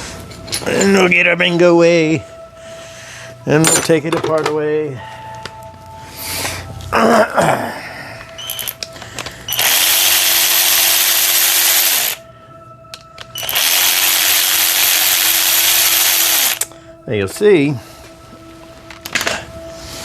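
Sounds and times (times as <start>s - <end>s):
tools clanking: 3.6s - 5.6s
impact wrench running: 9.5s - 12.2s, 13.4s - 16.7s.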